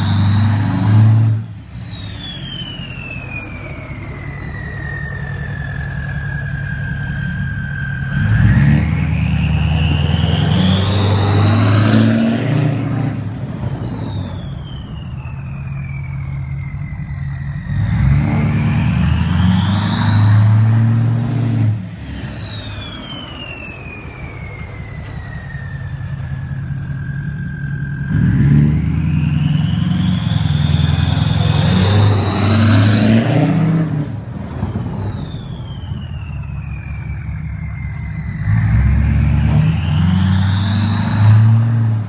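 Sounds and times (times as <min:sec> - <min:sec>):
diesel engine rumble: 0:00.0 - 0:42.0
turbo whistle: 0:29.0 - 0:42.0.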